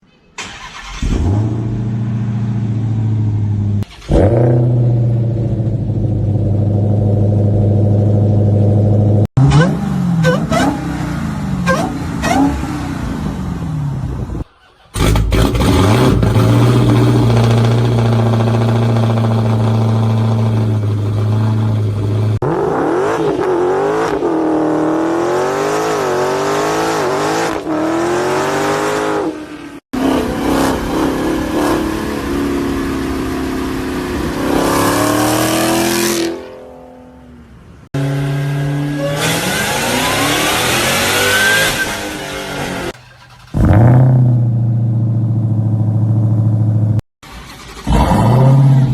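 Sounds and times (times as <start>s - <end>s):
car engine revving and accelerating: 15.0s - 36.6s, 38.0s - 48.9s.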